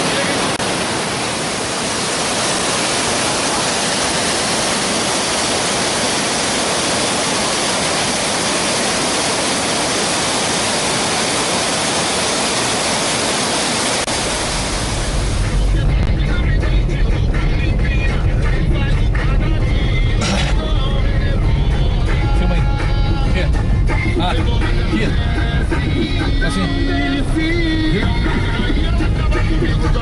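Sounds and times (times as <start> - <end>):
waterfall rushing: 0.0 - 22.3.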